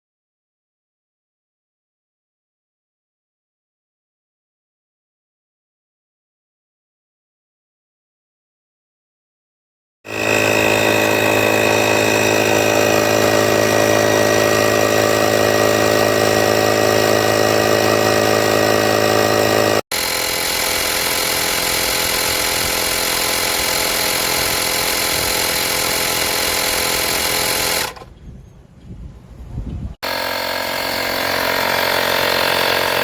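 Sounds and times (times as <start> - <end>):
air compressor drone: 10.1 - 28.1, 30.0 - 33.0.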